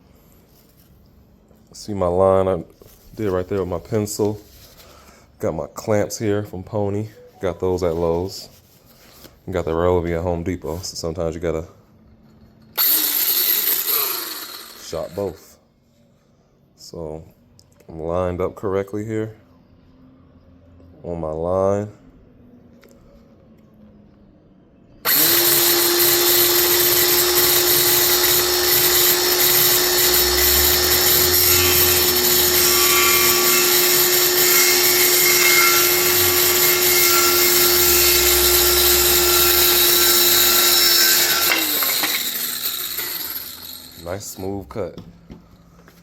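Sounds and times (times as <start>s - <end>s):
circular saw cutting wood: 12.8s - 15.4s, 25.1s - 44.6s.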